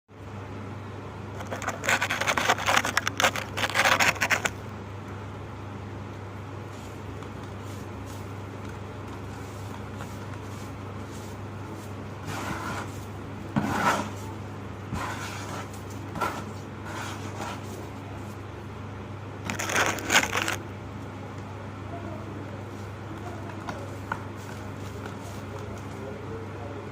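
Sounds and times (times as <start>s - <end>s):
steady low hum: 0.1s - 26.9s
crisp crunching of crumbly material: 1.4s - 4.6s, 19.4s - 20.6s.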